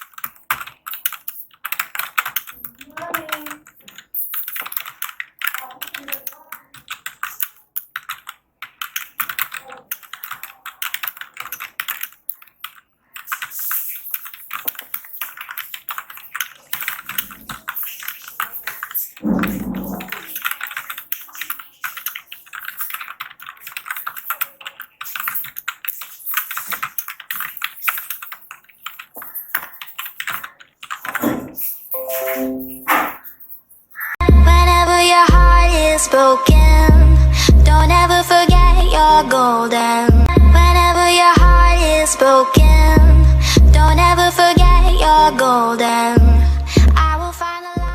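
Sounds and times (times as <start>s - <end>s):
fast keyboard typing: 0.0s - 34.3s.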